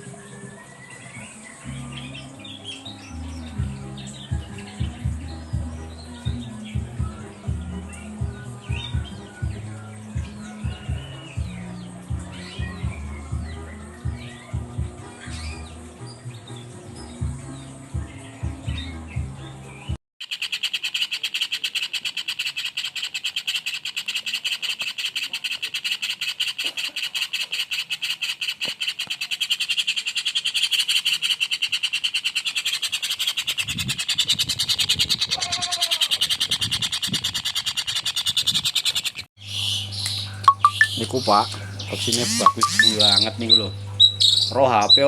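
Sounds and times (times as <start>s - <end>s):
music: 0.0s - 20.0s, 40.0s - 45.0s
songbird rapid chirping: 0.0s - 35.3s, 36.1s - 45.0s.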